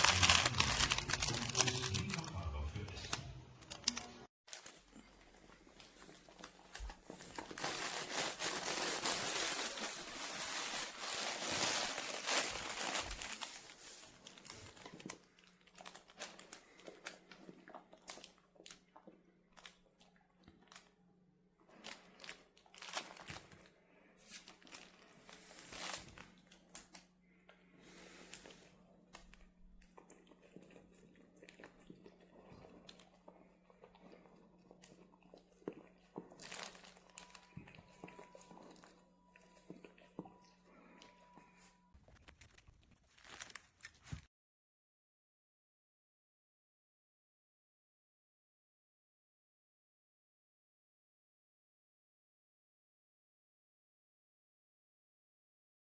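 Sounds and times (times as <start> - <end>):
dog rummaging in crinkly toy: 0.0 - 4.9, 5.8 - 16.5, 21.8 - 23.5, 36.4 - 37.5, 43.0 - 44.3.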